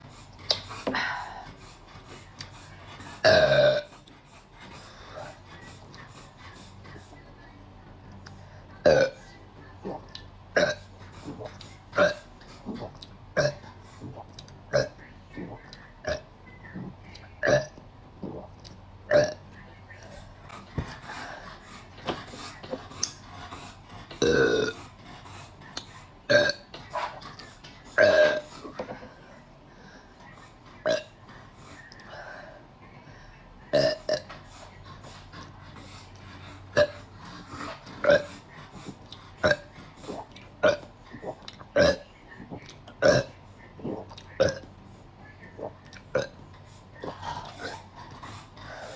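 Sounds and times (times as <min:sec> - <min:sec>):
person burping: 0:44.4 - 0:44.7.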